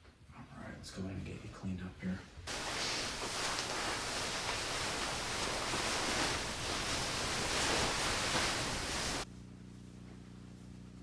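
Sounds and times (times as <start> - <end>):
towel rubbing on skin: 2.5 - 9.3.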